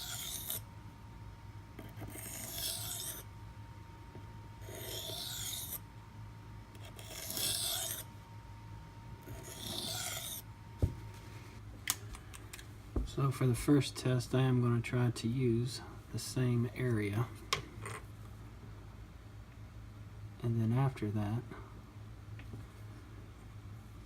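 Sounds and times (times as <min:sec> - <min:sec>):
knife on sharpening stone: 0:00.0 - 0:00.6, 0:02.0 - 0:03.2, 0:04.6 - 0:05.8, 0:07.0 - 0:08.0, 0:09.4 - 0:10.4.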